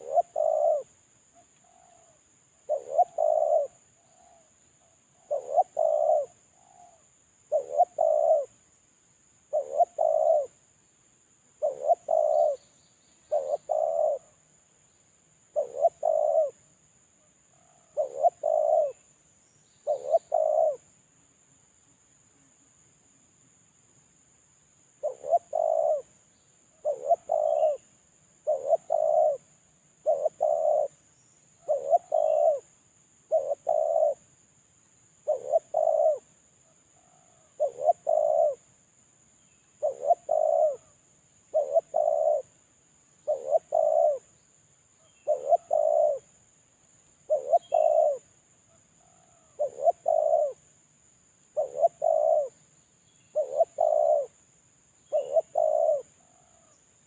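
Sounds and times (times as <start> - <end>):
dove cooing: 0.0 - 8.6, 9.5 - 10.6, 11.6 - 12.7, 13.3 - 14.4, 15.5 - 16.6, 17.5 - 19.1, 19.8 - 20.9, 25.0 - 26.1, 26.7 - 31.0, 31.6 - 32.7, 33.3 - 34.3, 35.2 - 36.4, 37.0 - 38.7, 39.8 - 42.6, 43.2 - 44.3, 45.0 - 46.4, 47.2 - 48.3, 49.0 - 50.6, 51.5 - 52.6, 53.3 - 54.4, 55.0 - 56.8.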